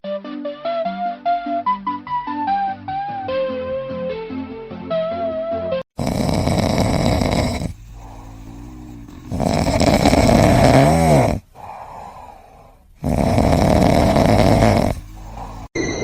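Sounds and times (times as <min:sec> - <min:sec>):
pet snoring loudly: 0:06.0 - 0:15.7.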